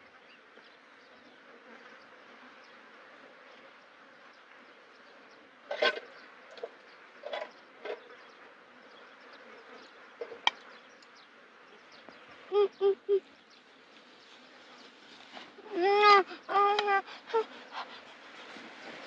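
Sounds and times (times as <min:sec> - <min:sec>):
insects buzzing: 0:00.0 - 0:19.0.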